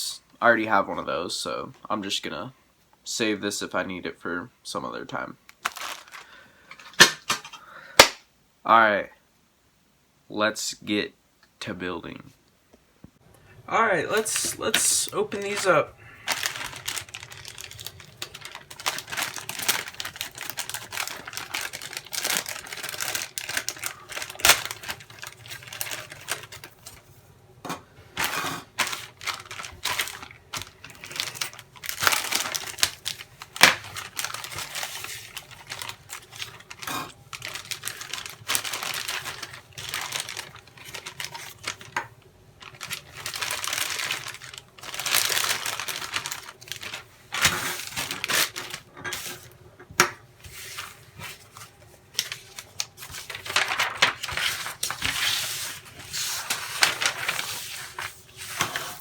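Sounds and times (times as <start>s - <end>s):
plastic bags crinkling: 5.5s - 8.2s, 13.8s - 27.2s, 28.2s - 49.6s, 50.5s - 59.0s.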